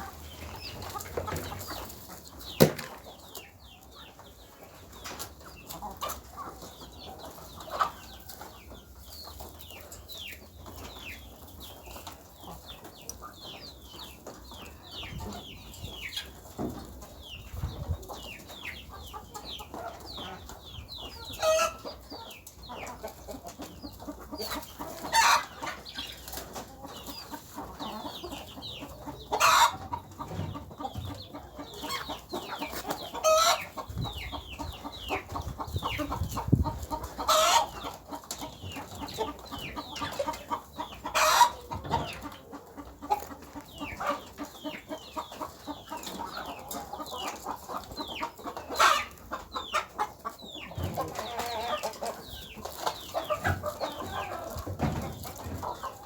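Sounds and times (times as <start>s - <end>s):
chickens clucking and chirping: 0.0s - 56.0s.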